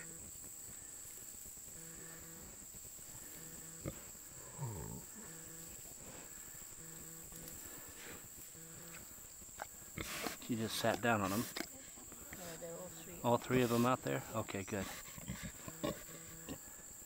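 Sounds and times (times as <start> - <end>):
high insect drone: 0.0 - 17.0
pig grunting: 3.2 - 7.0, 8.6 - 12.4, 14.7 - 16.8.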